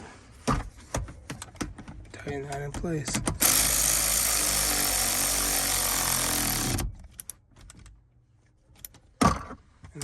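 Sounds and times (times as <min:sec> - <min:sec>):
power drill running: 0:03.4 - 0:06.8.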